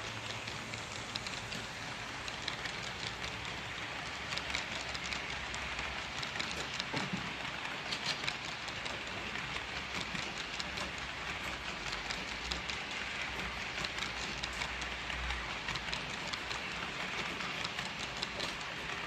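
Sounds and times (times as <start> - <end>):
wheels clicking on rails: 0.0 - 19.0.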